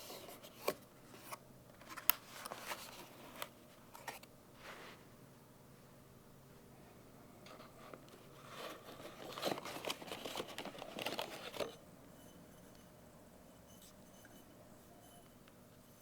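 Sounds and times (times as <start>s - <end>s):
packaging crinkling: 8.4s - 11.8s.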